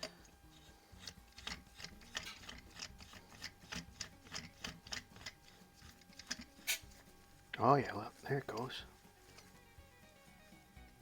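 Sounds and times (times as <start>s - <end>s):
cartridge cap screwing clicks: 0.0s - 6.9s.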